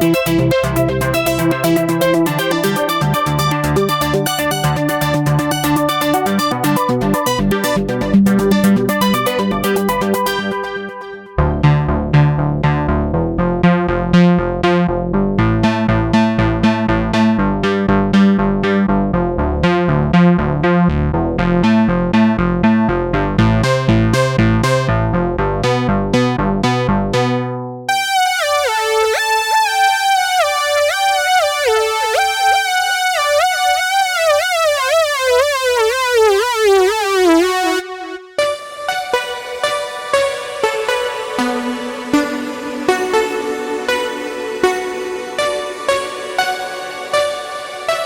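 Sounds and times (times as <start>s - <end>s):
bass line: 0.0s - 10.8s, 11.4s - 38.4s
plucky synth notes: 0.0s - 48.0s
gliding synth lead: 27.9s - 38.5s.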